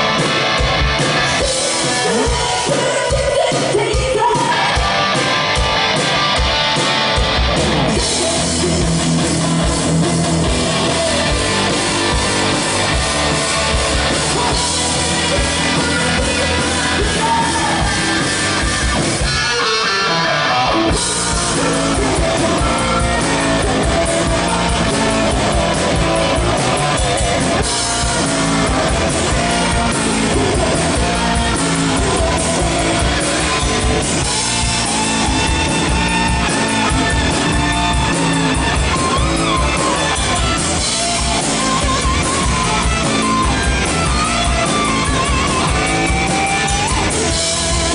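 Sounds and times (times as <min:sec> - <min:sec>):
bass guitar: 0:00.0 - 0:47.9
drum kit: 0:00.0 - 0:47.9
electric guitars: 0:00.0 - 0:47.9
person singing: 0:01.3 - 0:05.2, 0:13.5 - 0:47.9.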